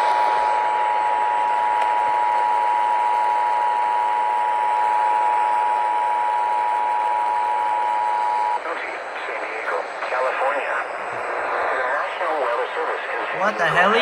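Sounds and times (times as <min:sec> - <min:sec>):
radio static hiss: 0:07.6 - 0:14.0.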